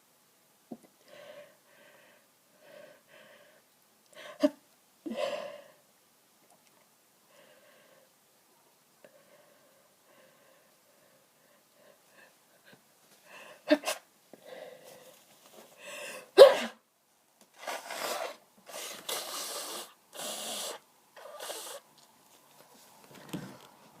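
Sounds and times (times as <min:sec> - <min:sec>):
breaths: 0:01.0 - 0:04.5, 0:07.3 - 0:08.2, 0:09.0 - 0:13.7, 0:14.4 - 0:16.4
person sneezing: 0:13.7 - 0:14.1, 0:16.3 - 0:16.8
nose blowing: 0:17.6 - 0:21.9.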